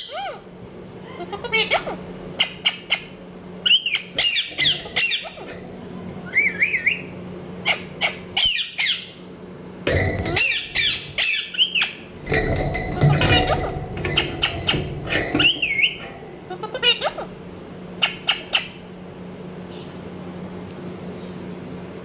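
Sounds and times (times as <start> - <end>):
parrot squawking: 0.0 - 0.4, 1.0 - 5.6, 6.2 - 9.2, 10.2 - 12.0, 13.2 - 17.4, 18.0 - 18.8
parrot whistled call: 6.2 - 7.1.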